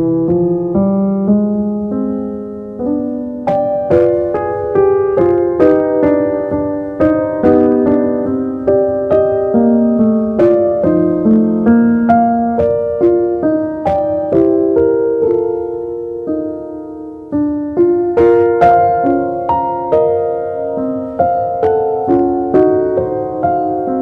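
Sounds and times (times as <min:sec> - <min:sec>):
gentle piano music: 0:00.0 - 0:24.0.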